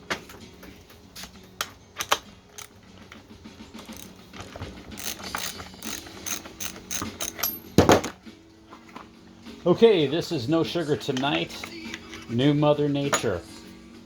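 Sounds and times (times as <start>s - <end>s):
ratchet wrench clicking: 3.8s - 7.7s.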